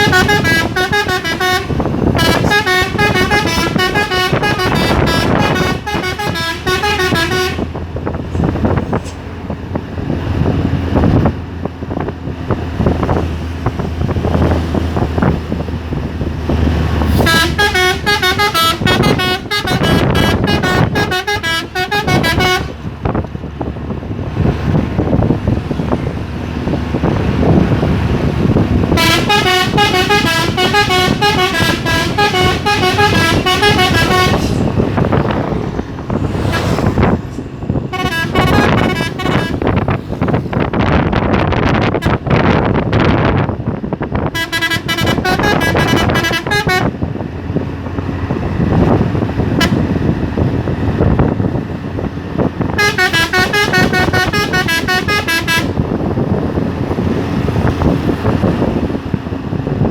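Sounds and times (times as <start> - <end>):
truck air horn melody: 0.0 - 7.8, 17.0 - 22.9, 28.9 - 35.6, 37.8 - 40.4, 44.3 - 47.0, 49.5 - 50.0, 52.6 - 56.2
road noise: 0.0 - 59.9
truck engine: 0.0 - 59.9.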